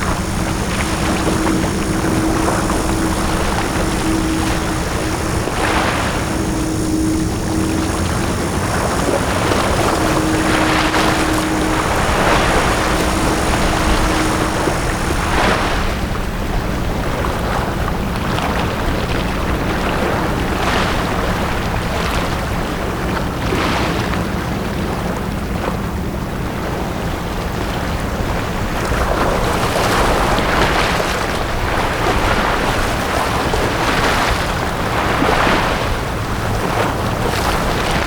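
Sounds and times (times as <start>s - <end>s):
steady low rumble: 0.0s - 22.9s
faint hum with high whine: 0.0s - 38.0s
sea waves washing on beach: 0.0s - 38.0s.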